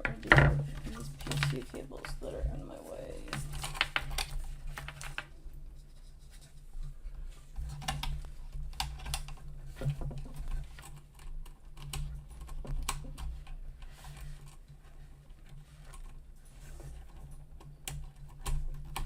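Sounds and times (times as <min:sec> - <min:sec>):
clicks and taps handling cables: 0:03.2 - 0:05.3.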